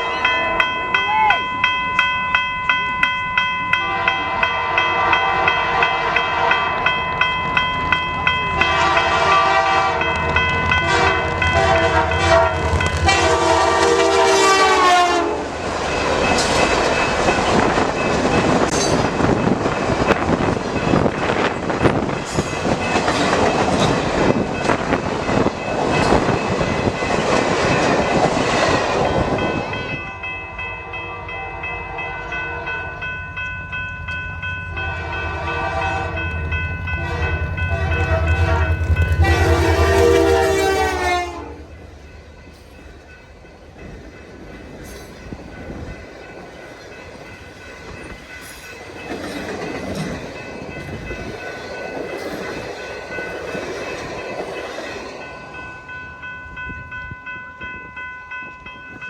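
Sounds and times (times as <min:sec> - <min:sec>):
crossing bell ringing: 0:00.0 - 0:59.0
train cars rumbling: 0:00.0 - 0:59.0
locomotive horn blasts: 0:03.8 - 0:06.7, 0:08.6 - 0:10.1, 0:10.8 - 0:15.4, 0:34.8 - 0:41.7.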